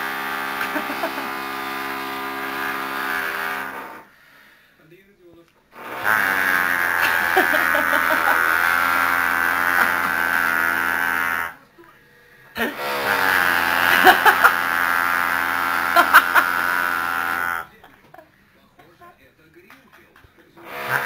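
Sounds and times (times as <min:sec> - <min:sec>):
man imitating drill with voice: 0:05.8 - 0:11.6, 0:12.6 - 0:17.7, 0:20.6 - 0:21.0.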